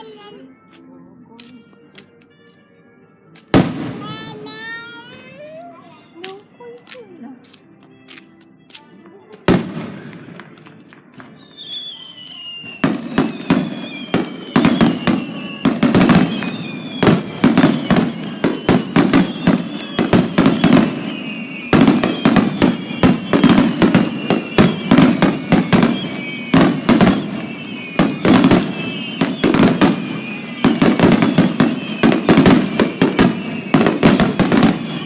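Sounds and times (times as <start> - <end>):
fireworks exploding: 3.5 - 5.5, 9.4 - 35.0.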